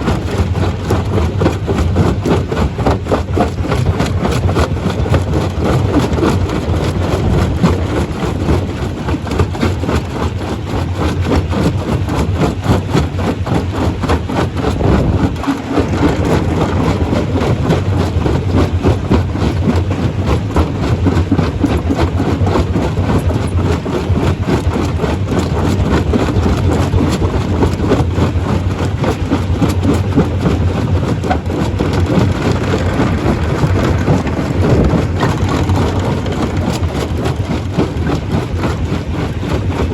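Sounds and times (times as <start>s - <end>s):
stone crusher rumbling: 0.0s - 39.9s
stones clattering and knocking: 31.3s - 36.9s.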